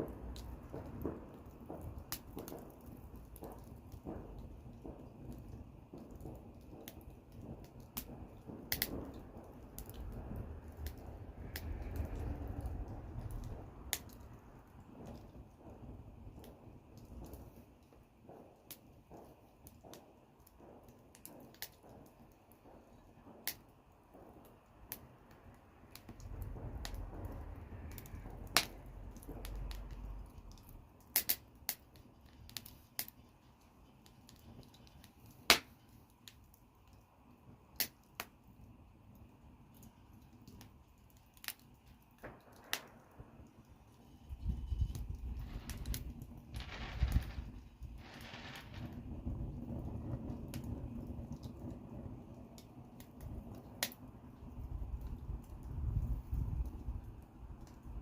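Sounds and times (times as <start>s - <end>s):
wood fire crackling: 0.0s - 58.0s
low rumble: 46.6s - 50.0s.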